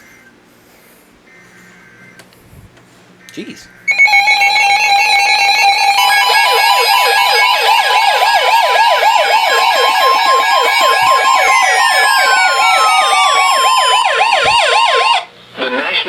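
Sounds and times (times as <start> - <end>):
loud beeping alert tones: 3.9 - 15.3
siren-like wail: 3.9 - 15.3.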